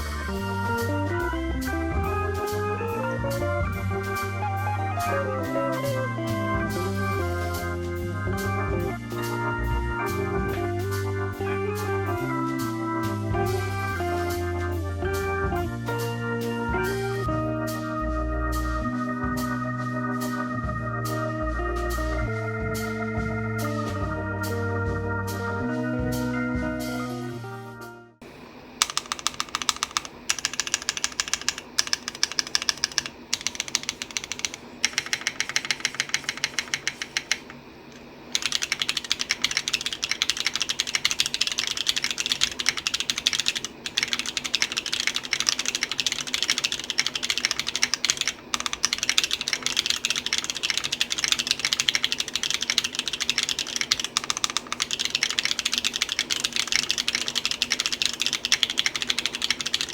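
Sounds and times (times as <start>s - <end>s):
mechanical keyboard typing: 28.8s - 37.6s, 38.3s - 59.9s.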